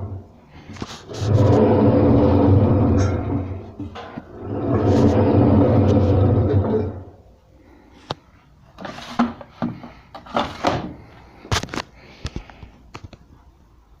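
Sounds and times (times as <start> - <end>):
short scraping sounds: 0.0 - 7.2.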